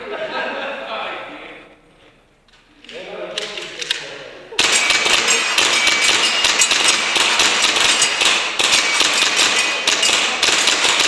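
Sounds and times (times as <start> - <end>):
airsoft pistols firing rapidly: 4.6 - 11.0
pellet impacts: 4.6 - 11.0.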